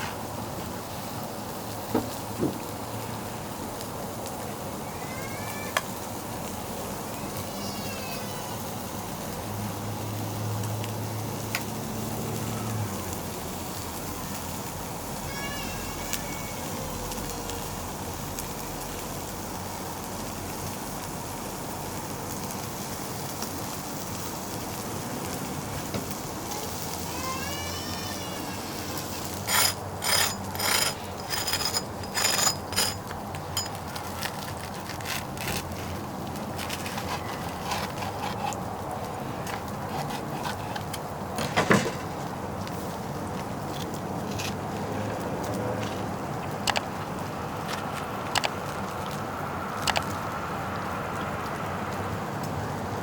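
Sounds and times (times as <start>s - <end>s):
meat sizzling on charcoal grill: 0.0s - 32.0s, 33.0s - 41.3s
sharp metallic clinks: 29.5s - 33.8s.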